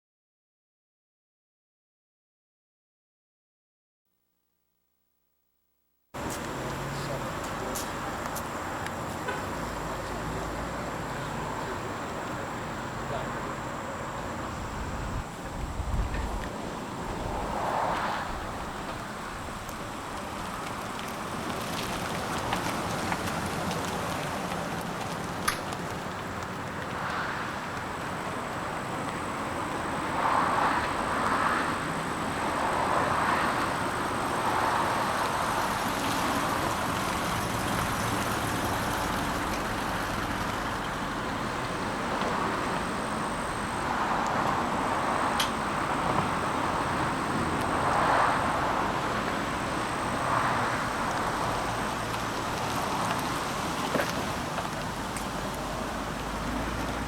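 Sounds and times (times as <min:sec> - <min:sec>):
high-pitched whine: 0:06.2 - 0:20.8, 0:27.3 - 0:53.4
traffic rushing: 0:06.2 - 0:57.0.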